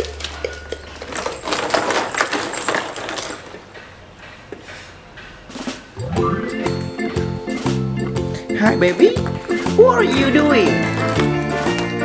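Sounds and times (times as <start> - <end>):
toys and wrappers rustling: 0.0 - 4.0, 7.5 - 12.0.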